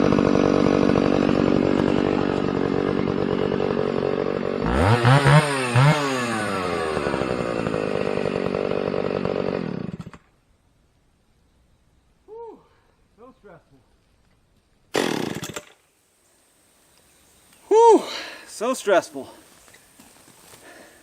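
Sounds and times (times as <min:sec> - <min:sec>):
chainsaw cutting wood: 0:00.0 - 0:10.4, 0:14.9 - 0:15.9.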